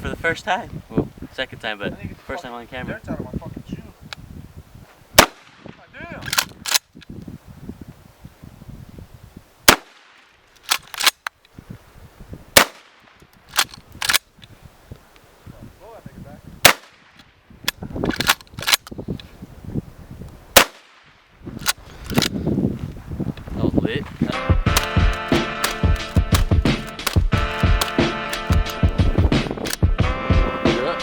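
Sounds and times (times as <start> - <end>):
shotgun blasts: 5.2 - 6.8, 9.7 - 10.2, 12.6 - 14.2, 16.6 - 17.2, 20.5 - 21.1
shotgun action clacks: 6.2 - 6.8, 24.7 - 29.0.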